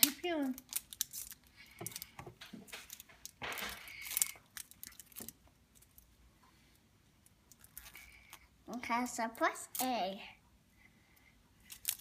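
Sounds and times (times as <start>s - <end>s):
wrapping being torn by hand: 0.0s - 2.1s, 2.7s - 6.0s, 11.6s - 12.0s.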